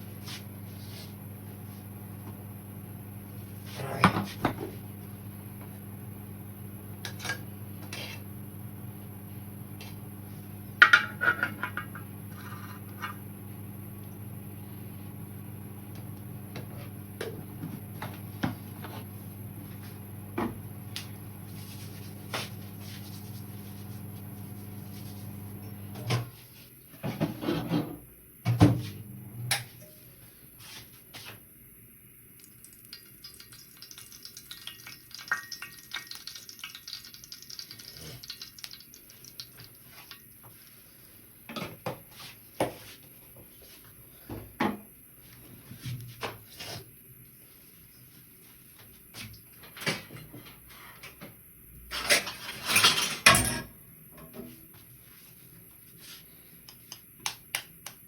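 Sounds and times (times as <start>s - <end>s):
dishes and utensils clinking: 51.9s - 54.3s.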